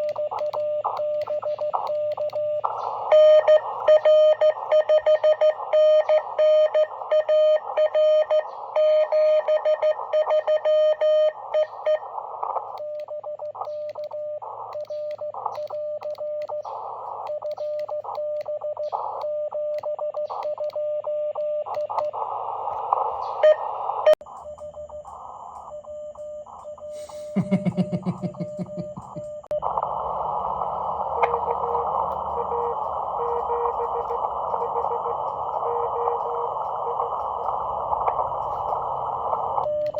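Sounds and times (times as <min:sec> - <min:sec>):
morse code tone: 0:00.0 - 0:12.1, 0:25.9 - 0:29.7, 0:31.1 - 0:37.2
receiver hiss: 0:00.0 - 0:39.9.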